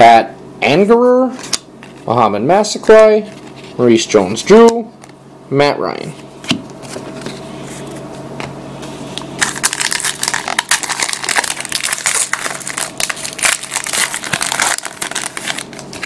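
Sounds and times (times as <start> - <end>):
faint steady hum: 0.0 - 16.0
wrapper crinkling: 9.4 - 16.0.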